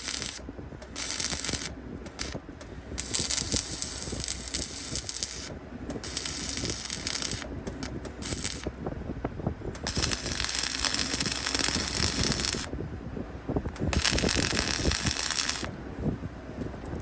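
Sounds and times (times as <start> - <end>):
welding arc crackling: 0.0 - 2.4, 3.0 - 8.7, 9.8 - 12.7, 13.8 - 15.7.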